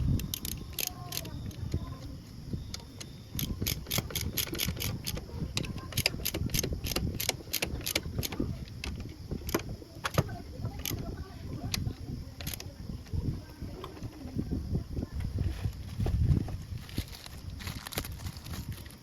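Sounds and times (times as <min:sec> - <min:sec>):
metallic clicks of hand tools: 0:00.2 - 0:01.7, 0:03.4 - 0:10.2.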